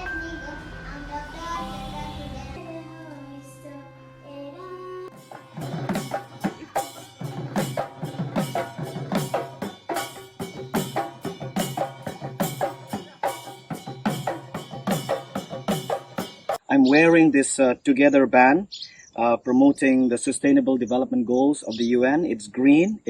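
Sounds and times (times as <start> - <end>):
soft melodic music: 0.0 - 7.6
driving drum beat: 5.1 - 16.7.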